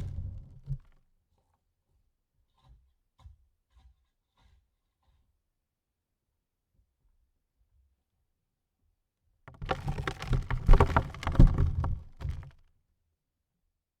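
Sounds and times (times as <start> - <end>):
dirt landing on a coffin lid: 9.6 - 12.5.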